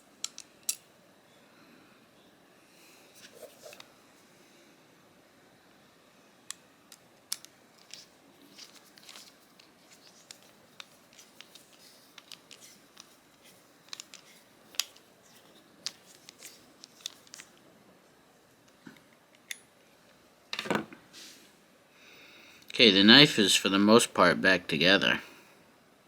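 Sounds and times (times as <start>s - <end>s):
knife and tools clicking: 7.3s - 17.5s.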